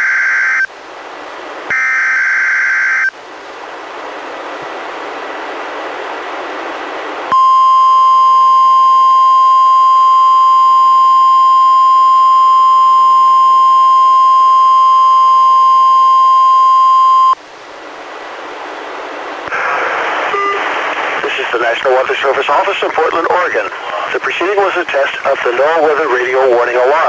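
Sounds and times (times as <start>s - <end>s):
radio hiss: 19.4s - 27.0s
announcer speaking: 21.2s - 27.0s.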